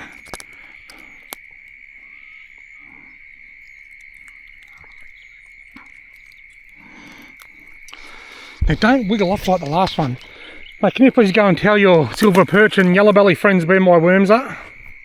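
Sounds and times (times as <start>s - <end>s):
faint clicks: 0.0s - 13.0s
frogs calling: 0.0s - 15.0s
insects chirping: 0.0s - 15.0s.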